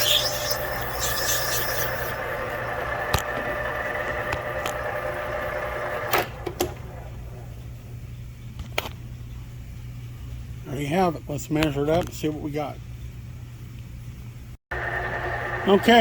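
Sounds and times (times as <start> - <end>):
machining spindle whine: 0.0 - 6.1.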